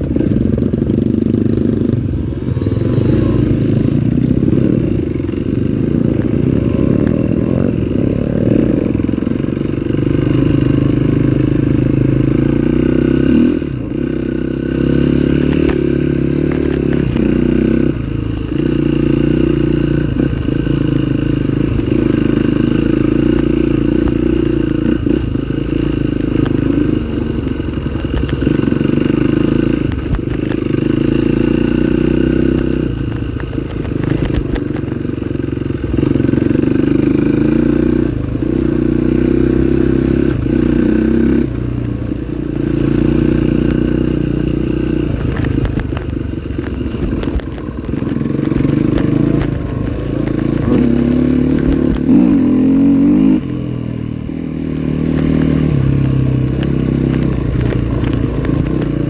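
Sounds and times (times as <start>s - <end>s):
motorcycle engine revving: 0.0s - 59.0s.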